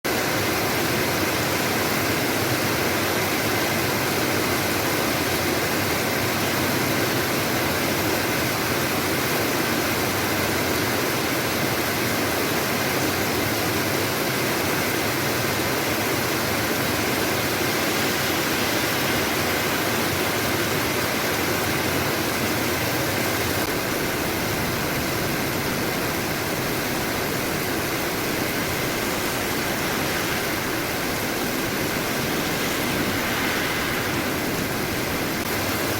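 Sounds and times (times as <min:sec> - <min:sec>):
heavy rain falling: 0:00.1 - 0:35.9.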